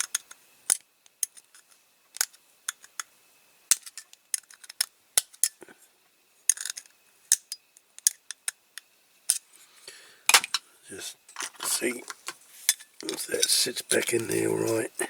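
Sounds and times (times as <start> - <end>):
metal toy parts clicking: 0.0 - 3.1, 3.7 - 5.6, 6.5 - 9.5, 11.3 - 14.8.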